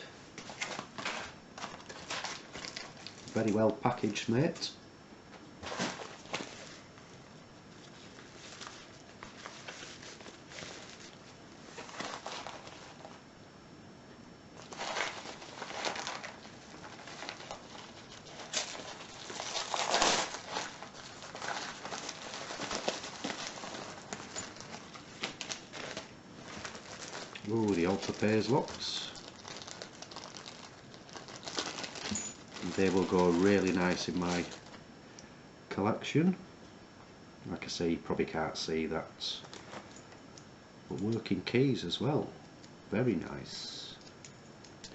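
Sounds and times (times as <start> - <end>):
bubble wrap crinkling: 0.0 - 4.6, 5.6 - 13.2, 14.6 - 34.8, 39.3 - 40.2.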